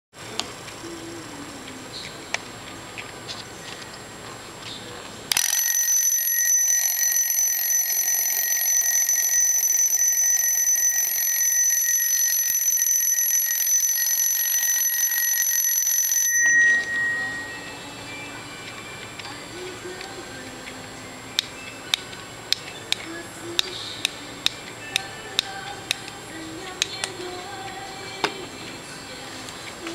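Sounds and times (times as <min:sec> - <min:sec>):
alarm clock bell ringing: 0:05.3 - 0:19.2.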